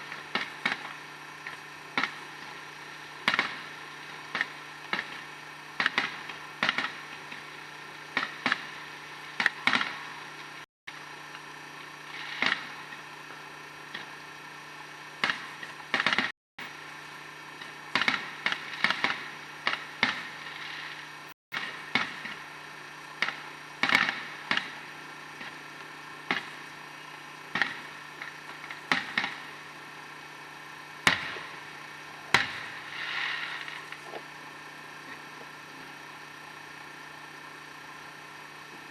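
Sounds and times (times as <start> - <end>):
fireworks bangs: 0.0 - 10.6, 12.0 - 14.2, 17.6 - 26.8, 30.9 - 35.3
steady low hum: 0.0 - 38.9.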